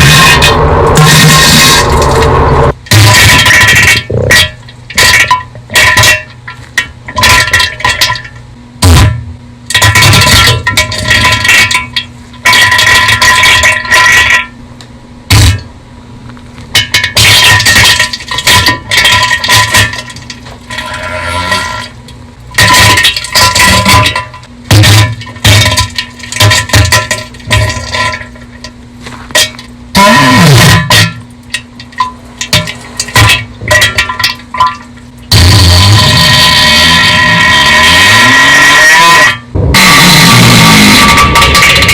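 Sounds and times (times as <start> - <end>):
distorted spluttering bursts: 0.0 - 6.2, 29.9 - 31.2, 34.7 - 41.9.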